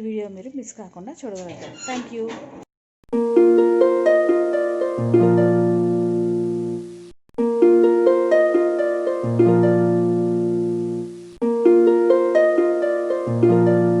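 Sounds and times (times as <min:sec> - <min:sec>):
plucked string melody: 0:03.1 - 0:14.0.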